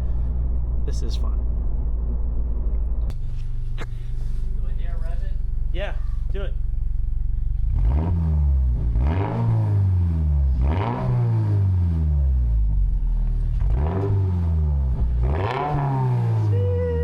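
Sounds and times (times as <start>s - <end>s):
car engine revving hard: 7.7s - 12.3s, 13.6s - 16.5s.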